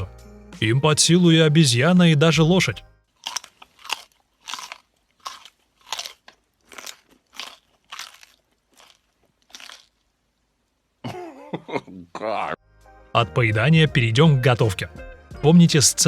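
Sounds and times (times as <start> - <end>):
person chewing crunchy food: 3.1 - 10.3.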